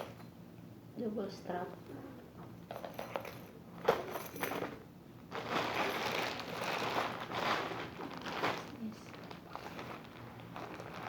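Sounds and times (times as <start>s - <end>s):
packaging crinkling and rustling: 2.9s - 11.0s.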